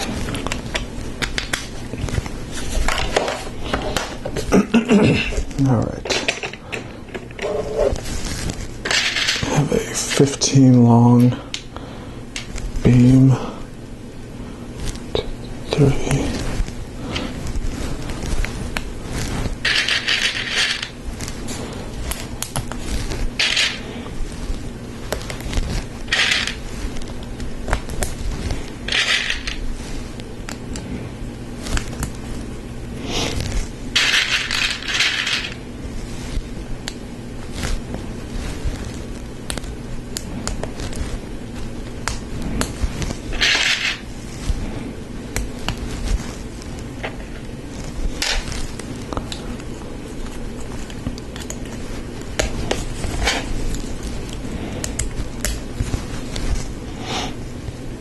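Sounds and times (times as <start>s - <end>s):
loose pieces rattling: 5.8s - 7.8s, 8.8s - 10.2s, 19.6s - 21.0s, 23.4s - 23.8s, 26.1s - 26.6s, 28.9s - 29.6s, 34.0s - 35.6s, 43.3s - 44.0s
plastic parts clicking and clattering: 6.0s - 7.5s, 19.6s - 20.9s, 26.1s - 26.6s, 28.9s - 29.6s, 34.0s - 35.6s, 43.3s - 44.0s.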